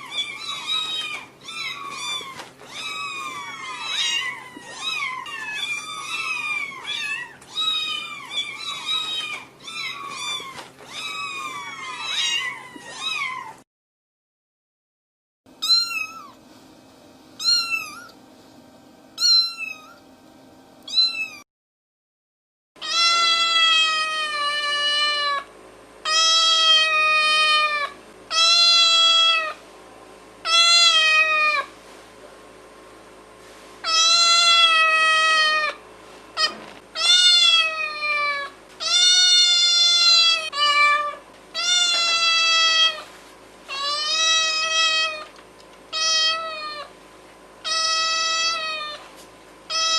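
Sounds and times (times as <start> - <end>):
cats meowing: 0.0 - 13.6, 15.6 - 16.4, 17.4 - 18.2, 19.2 - 20.0, 20.9 - 21.4, 22.8 - 29.6, 30.4 - 31.7, 33.8 - 35.8, 36.4 - 43.1, 43.7 - 46.9, 47.6 - 49.1, 49.7 - 49.9.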